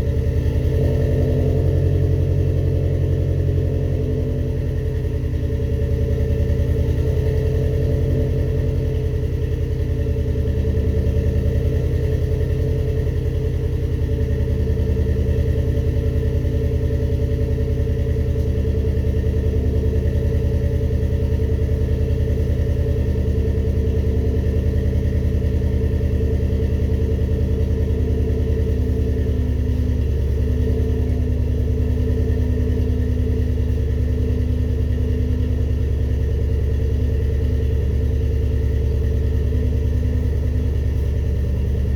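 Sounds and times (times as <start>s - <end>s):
car engine idling: 0.0s - 41.9s.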